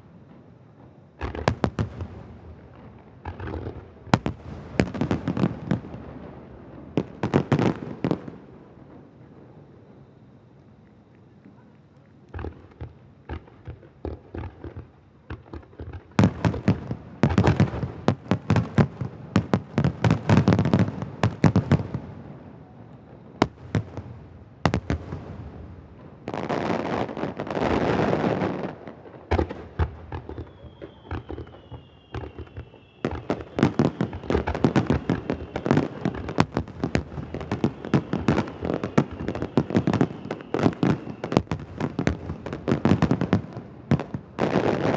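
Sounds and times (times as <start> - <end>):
fireworks bursting with sharp bangs: 0.0 - 10.3, 12.2 - 44.9
faint falling whistle: 30.2 - 36.3, 37.3 - 41.5.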